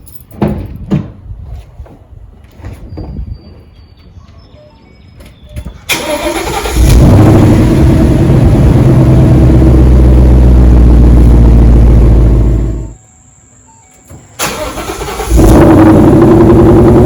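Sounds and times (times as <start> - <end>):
car engine starting and idling: 5.9 - 13.0, 14.4 - 17.0.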